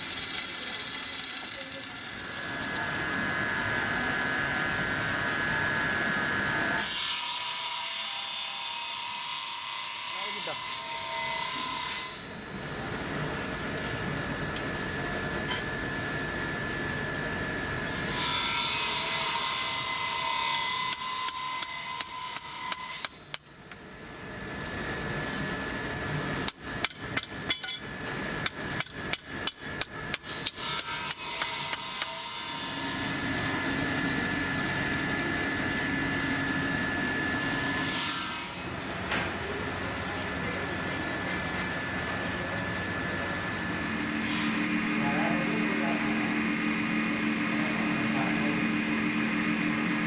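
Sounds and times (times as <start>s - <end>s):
hammer striking steel: 20.5s - 24.0s, 26.4s - 32.6s.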